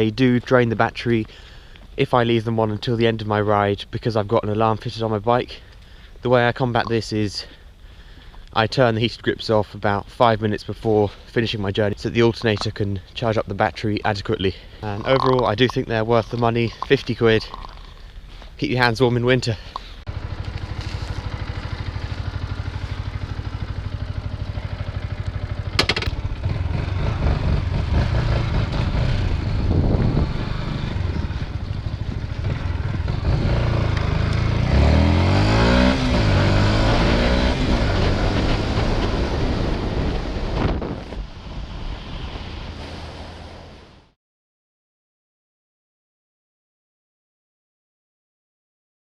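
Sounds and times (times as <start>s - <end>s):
motorcycle engine revving: 20.1s - 40.6s.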